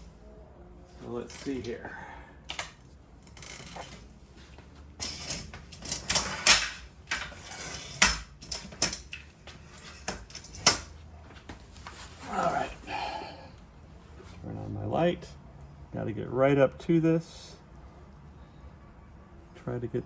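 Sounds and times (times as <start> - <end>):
tools and small objects clattering: 4.9 - 11.0.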